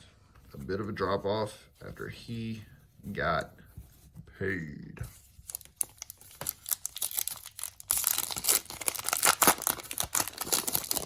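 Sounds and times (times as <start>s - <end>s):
foil wrapper crinkling and tearing: 5.5s - 11.0s.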